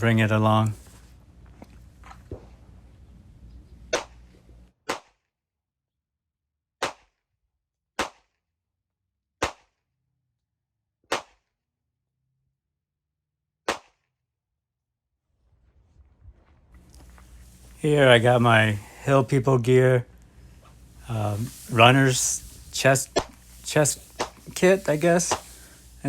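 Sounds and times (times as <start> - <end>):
pistol shots: 3.9 - 4.2.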